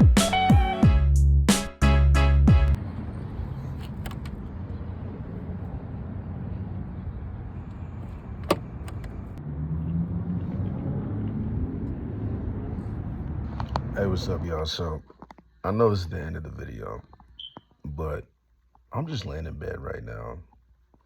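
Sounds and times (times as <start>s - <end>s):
vehicle engine rumble: 2.7s - 15.0s
low engine hum: 2.8s - 14.4s.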